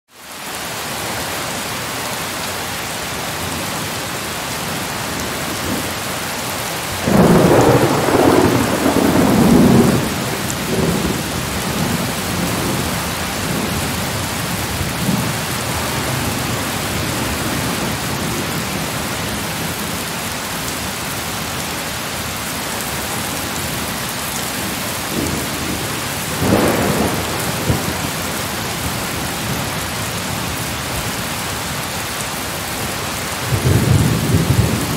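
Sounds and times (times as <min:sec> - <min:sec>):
heavy rain falling: 0:00.1 - 0:34.9
thunder peal: 0:07.1 - 0:12.0, 0:25.1 - 0:28.2.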